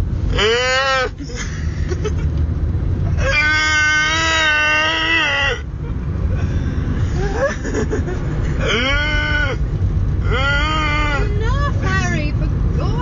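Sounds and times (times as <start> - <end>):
car road and engine rumble: 0.0 - 13.0
man making high-pitched vocal noise: 10.2 - 11.4.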